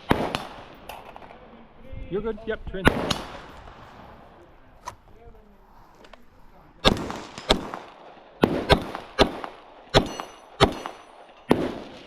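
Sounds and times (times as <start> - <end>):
airsoft gun shots: 0.0 - 1.3, 2.8 - 3.4, 6.8 - 12.0.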